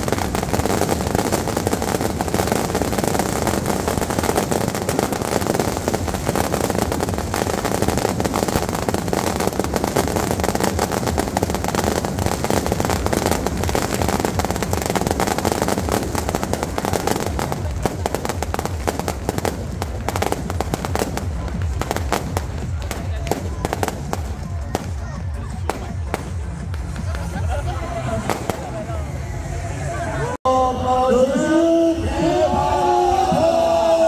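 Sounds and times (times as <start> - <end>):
fireworks crackling: 0.0 - 29.8.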